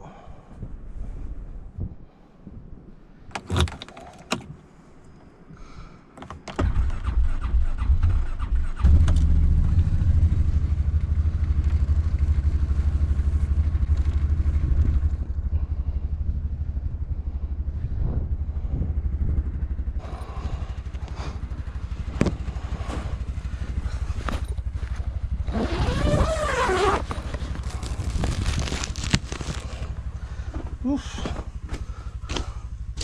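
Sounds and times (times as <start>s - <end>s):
engine cranking and running: 6.5s - 17.6s, 18.2s - 33.0s.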